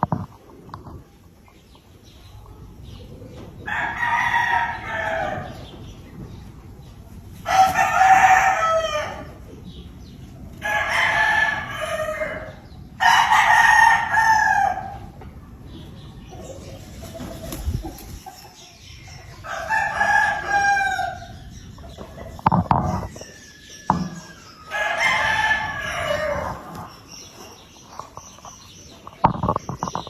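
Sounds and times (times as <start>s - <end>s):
roosters crowing: 3.6s - 6.1s, 7.4s - 9.7s, 10.4s - 15.2s, 19.2s - 30.0s.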